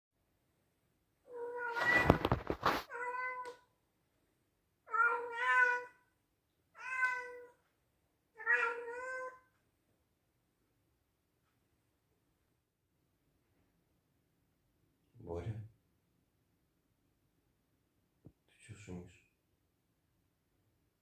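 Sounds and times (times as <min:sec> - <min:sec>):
cat meowing loudly: 0:01.3 - 0:03.6, 0:04.9 - 0:06.1, 0:06.8 - 0:07.6, 0:08.4 - 0:09.5.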